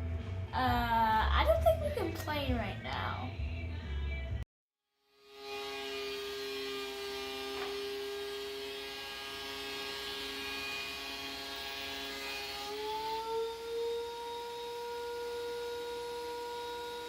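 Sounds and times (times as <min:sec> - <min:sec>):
woodworking machine whine: 0:05.2 - 0:17.0.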